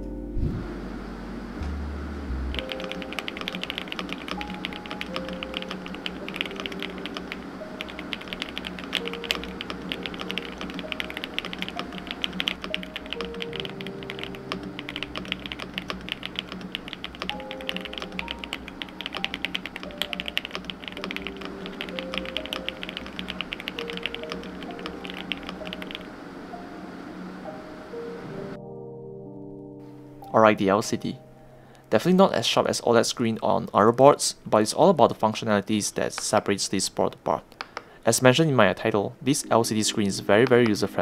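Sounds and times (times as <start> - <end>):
background music: 0.0 - 32.4, 38.9 - 41.0
fast typing on mechanical keyboard: 2.6 - 26.1.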